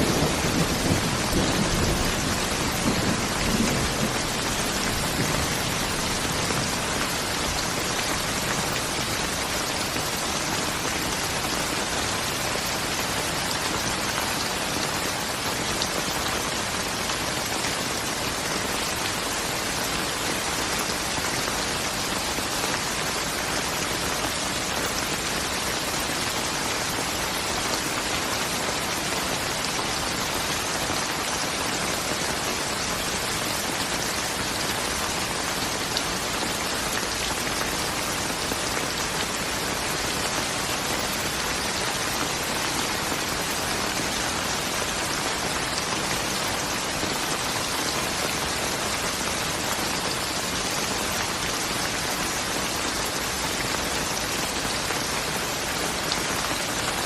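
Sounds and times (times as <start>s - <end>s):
dense rain falling: 0.0s - 57.0s.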